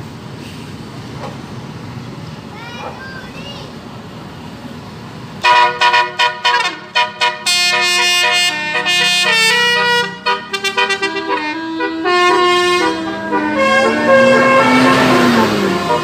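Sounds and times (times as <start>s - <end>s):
musical bus horn melody: 5.4s - 16.0s.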